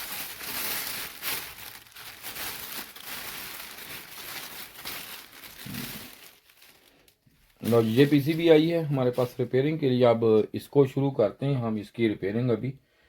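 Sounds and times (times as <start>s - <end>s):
packaging crinkling and tearing: 0.0s - 9.4s.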